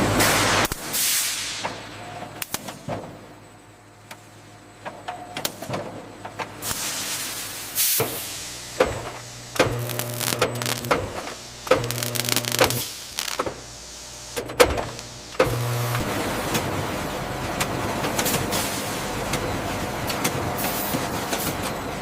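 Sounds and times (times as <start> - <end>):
low machinery hum: 8.1 - 20.6.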